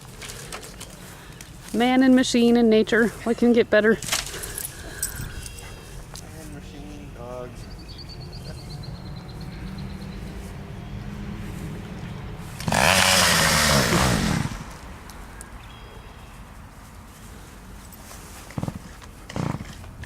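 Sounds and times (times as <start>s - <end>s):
chainsaw running and revving: 12.4s - 14.8s, 18.6s - 19.8s.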